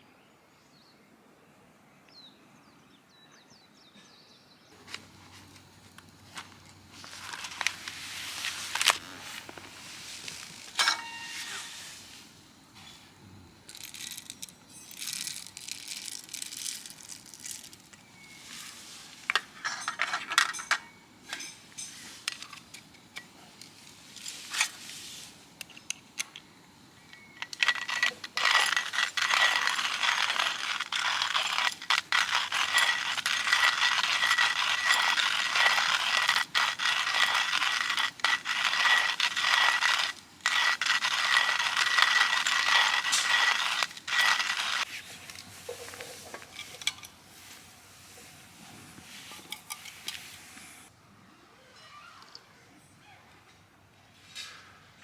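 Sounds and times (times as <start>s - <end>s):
steady hiss: 4.8s - 19.7s, 21.0s - 32.2s, 43.1s - 50.9s
metal gear clinking and scraping: 6.3s - 12.0s, 13.7s - 22.6s, 27.1s - 47.2s.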